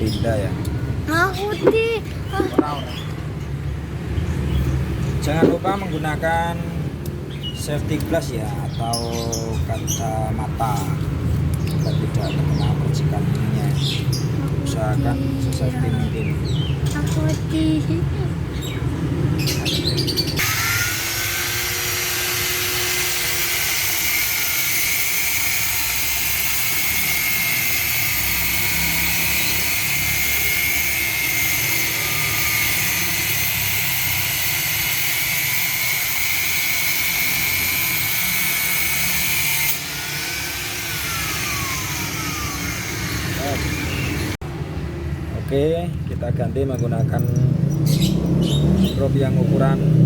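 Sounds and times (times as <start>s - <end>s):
angle grinder cutting metal: 20.3s - 44.4s.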